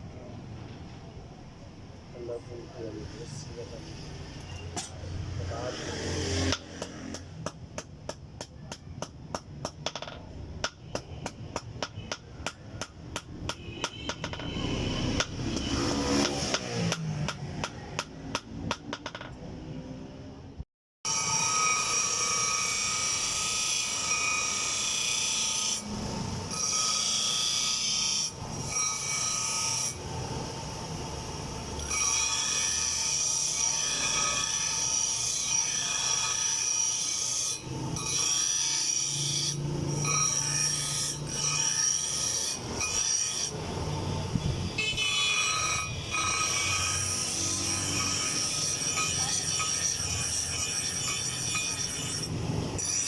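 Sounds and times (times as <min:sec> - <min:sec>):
power grinder grinding knife blade: 0:04.0 - 0:07.4, 0:13.8 - 0:17.7, 0:21.1 - 0:53.0.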